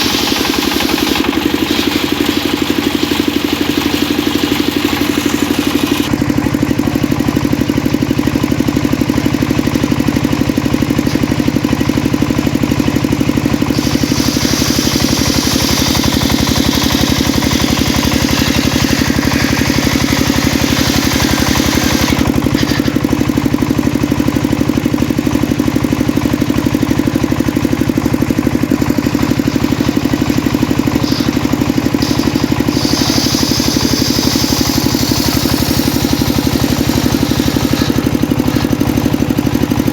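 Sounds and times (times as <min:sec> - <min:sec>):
saw blade cutting wood: 0:00.0 - 0:06.1, 0:11.0 - 0:11.4, 0:13.7 - 0:23.2, 0:28.5 - 0:39.2
sawmill engine running: 0:00.0 - 0:39.9.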